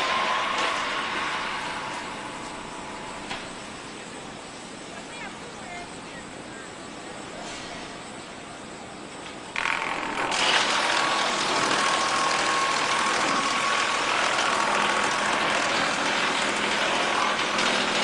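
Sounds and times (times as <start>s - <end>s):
wood chipper running: 0.0s - 4.1s, 9.5s - 18.0s.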